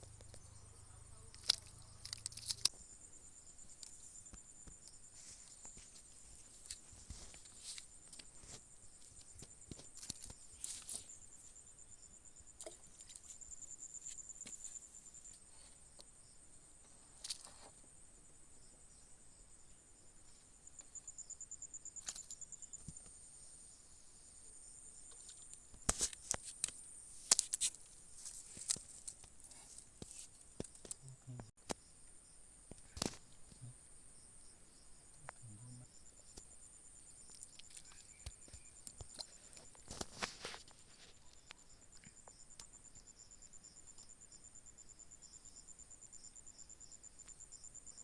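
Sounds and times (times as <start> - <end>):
crickets chirring: 0.0 - 48.0
handling clicks and rustles: 1.3 - 2.8, 3.7 - 11.2, 25.1 - 31.0.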